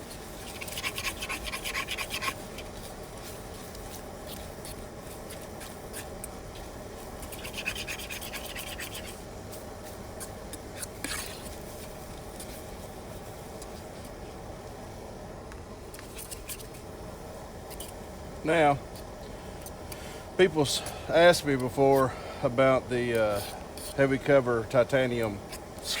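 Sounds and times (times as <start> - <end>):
utensil scraping food in a skillet: 0.0 - 14.2, 15.9 - 16.9, 18.9 - 24.2.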